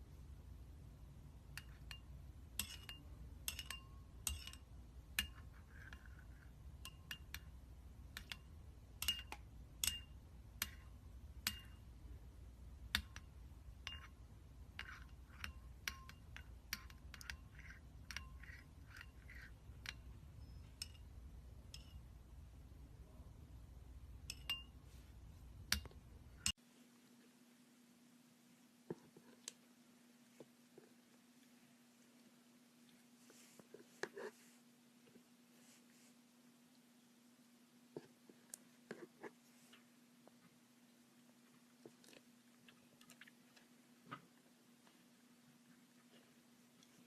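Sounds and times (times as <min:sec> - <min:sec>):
hard object being tapped: 0:01.6 - 0:11.8.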